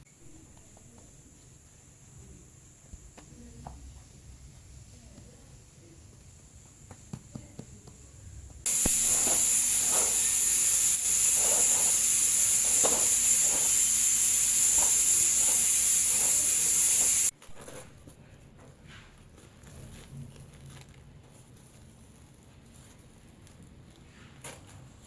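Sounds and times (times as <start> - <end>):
loud steady hiss: 0.1 - 17.3.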